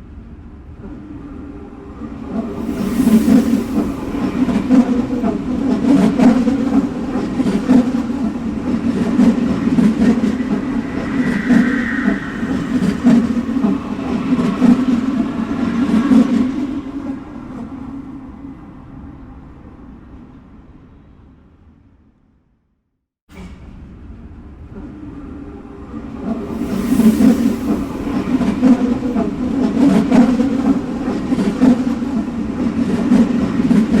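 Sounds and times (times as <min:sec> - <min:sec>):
subway train on tracks: 0:00.0 - 0:22.4, 0:23.3 - 0:34.0
high wheel squeal: 0:09.4 - 0:15.3.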